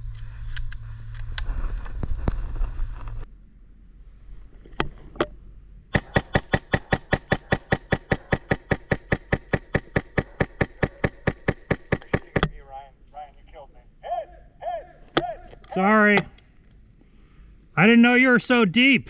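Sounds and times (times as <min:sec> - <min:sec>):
airsoft gun shots: 0:05.9 - 0:12.6.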